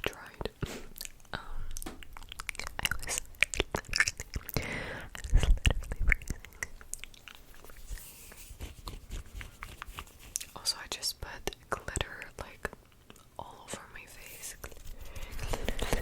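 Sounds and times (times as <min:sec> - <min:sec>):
wet mouth clicks and smacks: 0:01.0 - 0:07.8.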